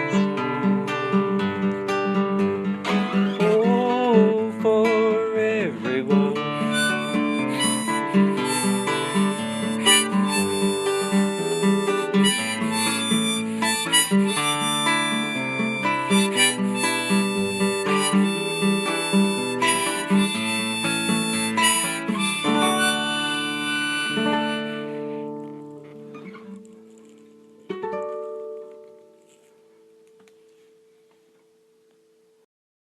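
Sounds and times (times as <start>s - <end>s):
strummed acoustic guitar: 0.0s - 30.2s
harmonica melody: 6.3s - 27.2s.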